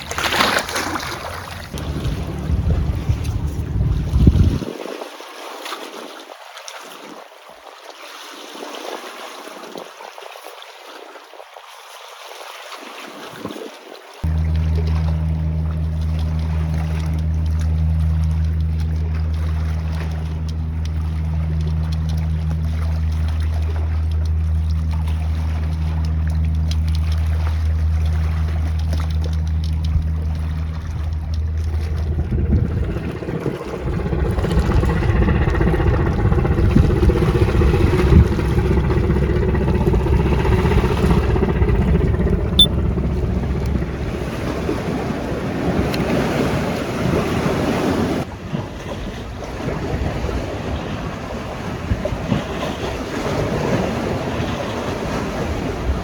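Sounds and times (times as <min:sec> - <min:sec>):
motorboat engine drone: 0:00.0 - 0:04.8, 0:14.2 - 0:56.0
wind and water rushing: 0:00.0 - 0:07.2, 0:18.6 - 0:56.0.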